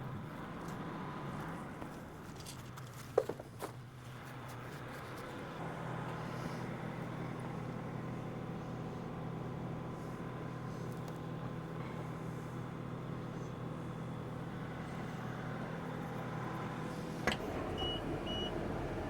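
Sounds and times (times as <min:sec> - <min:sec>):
diesel engine droning: 0:05.4 - 0:19.0.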